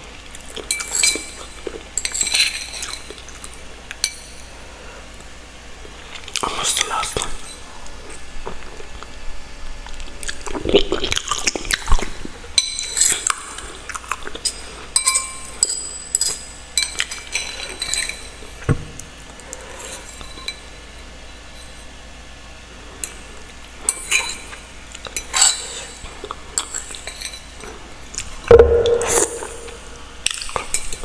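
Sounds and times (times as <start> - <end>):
utensil clinking against dish: 0.6 - 3.2, 14.4 - 18.4.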